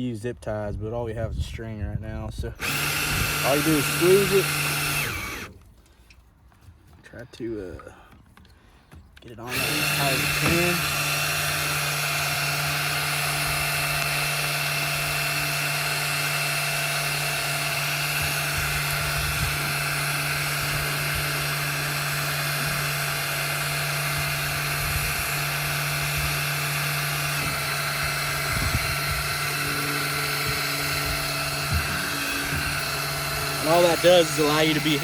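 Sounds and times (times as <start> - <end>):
electric drill running: 2.6 - 5.6, 9.5 - 35.0.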